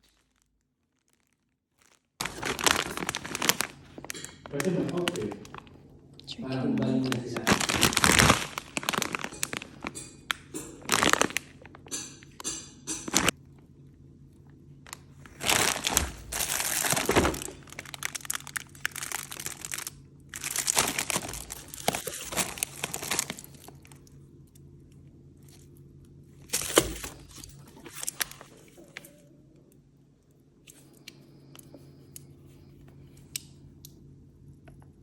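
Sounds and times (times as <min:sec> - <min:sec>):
plastic packaging crinkling and tearing: 0:00.0 - 0:13.4, 0:14.8 - 0:24.7, 0:26.4 - 0:29.2.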